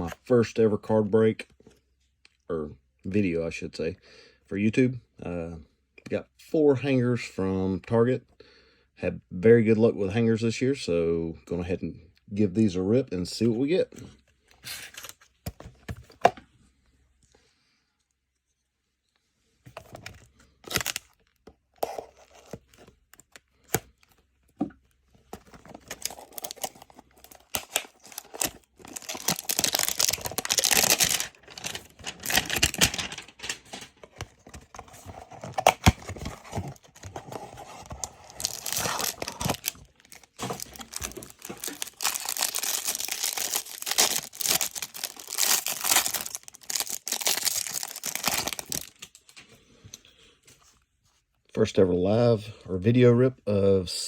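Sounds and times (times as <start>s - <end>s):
packaging tearing and crinkling: 20.6s - 23.9s, 25.4s - 49.2s
scattered clicks and rustles: 30.0s - 42.2s.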